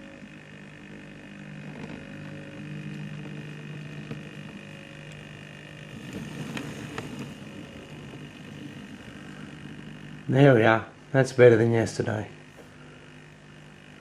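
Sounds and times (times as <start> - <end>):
model train motor humming: 0.0 - 14.0
faint track clicks: 1.6 - 5.3.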